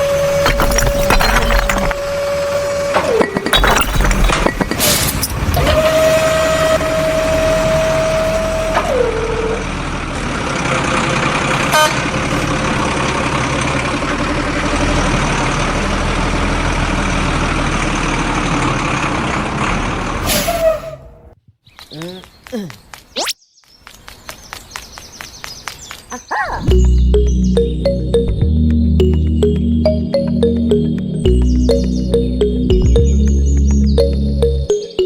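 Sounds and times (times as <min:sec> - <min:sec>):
truck engine running: 0:00.0 - 0:20.3.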